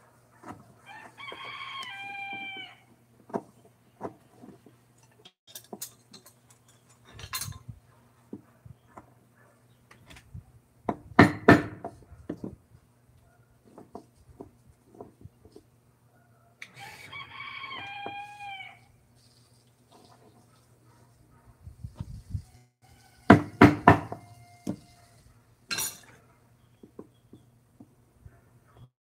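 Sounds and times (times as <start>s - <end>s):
rooster crowing: 0.8s - 2.9s, 16.7s - 18.9s, 22.8s - 25.2s.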